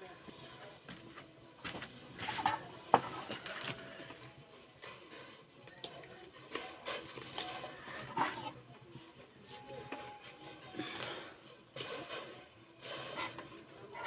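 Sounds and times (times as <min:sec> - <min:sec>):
pot and utensils clattering: 0:02.2 - 0:04.2, 0:05.7 - 0:08.7, 0:11.7 - 0:14.0.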